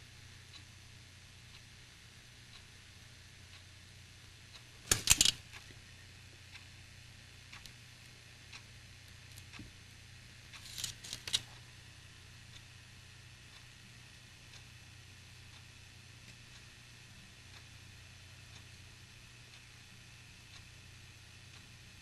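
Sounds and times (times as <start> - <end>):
sharp clicks and rattles: 4.9 - 5.7, 10.5 - 11.5
faint ticks: 7.5 - 9.8.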